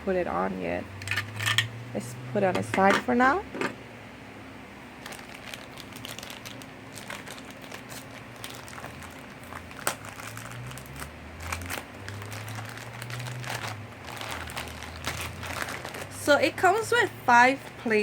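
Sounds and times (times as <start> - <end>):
plastic packaging crinkling: 5.0 - 16.9.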